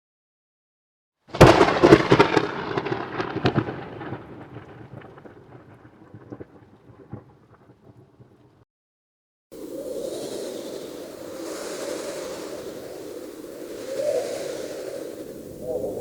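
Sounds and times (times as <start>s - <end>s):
thunder crack and rumble: 1.3s - 8.6s.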